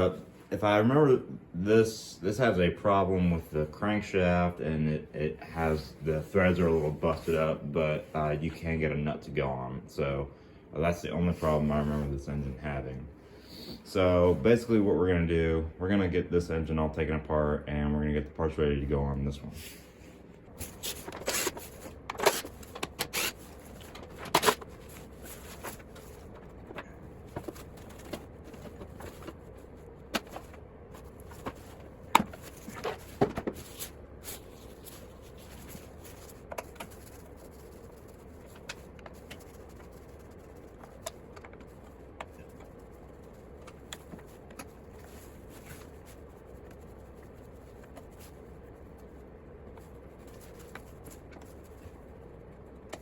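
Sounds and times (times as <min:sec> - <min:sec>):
faint steady hum: 0:00.0 - 0:53.0
hand tools clicking and scraping: 0:20.6 - 0:29.4.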